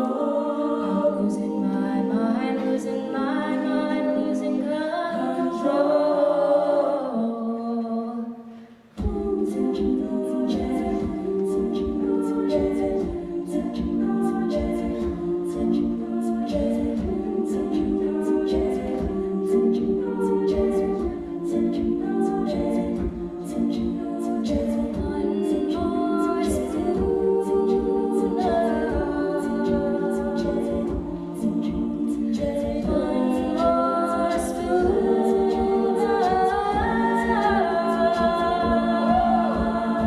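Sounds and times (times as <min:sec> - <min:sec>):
a cappella group singing chords: 0:00.0 - 0:40.0
vocal percussion beat: 0:08.4 - 0:40.0.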